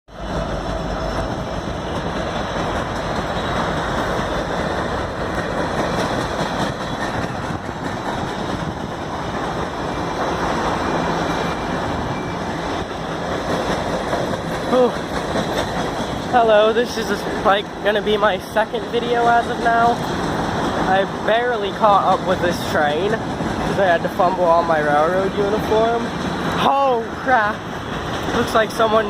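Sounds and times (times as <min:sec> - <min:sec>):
freight train wheels rumbling: 0:00.1 - 0:29.0.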